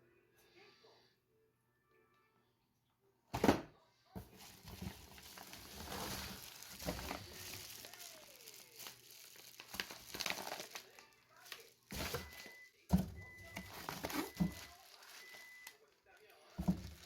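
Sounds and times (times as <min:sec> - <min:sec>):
plastic packaging crinkling: 0:04.2 - 0:17.0.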